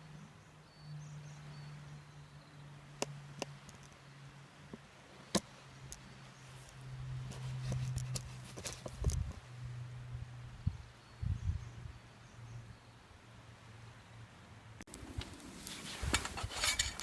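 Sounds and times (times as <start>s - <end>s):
campfire crackling: 14.8s - 17.0s.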